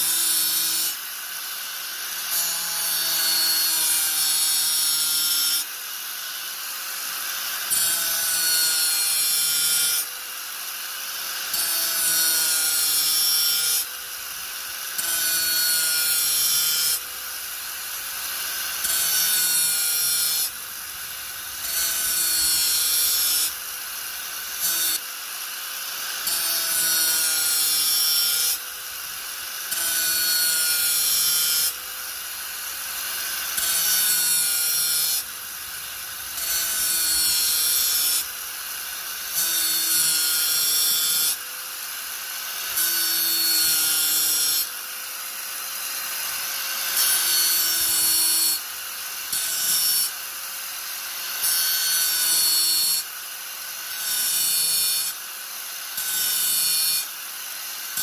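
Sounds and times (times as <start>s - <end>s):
angle grinder whining: 11.2s - 41.4s.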